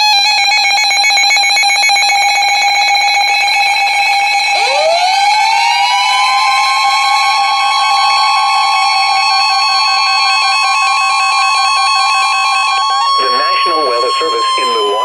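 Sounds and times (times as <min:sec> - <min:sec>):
buzzy alarm tone: 0:00.0 - 0:15.0
rising alert tone: 0:04.5 - 0:05.4.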